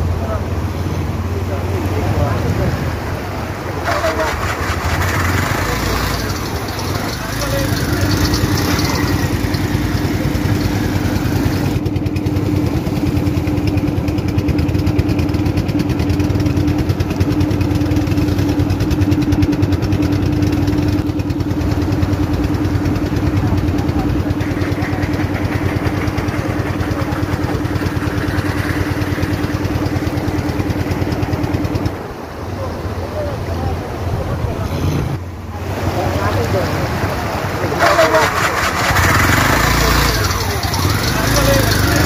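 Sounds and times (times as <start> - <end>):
small engine running steadily: 0.0 - 42.0.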